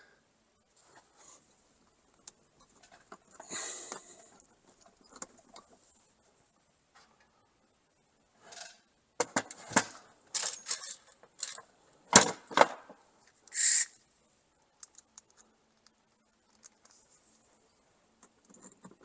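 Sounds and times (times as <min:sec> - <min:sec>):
rustle: 0:00.0 - 0:19.0
clicks and knocks of fittings: 0:08.5 - 0:12.3.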